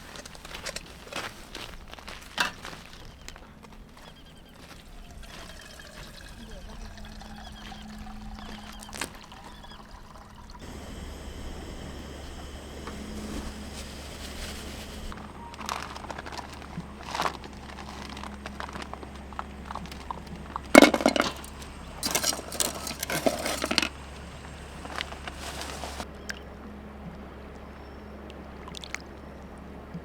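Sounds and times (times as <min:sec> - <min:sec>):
hard objects clinking and clattering: 0:15.4 - 0:26.0.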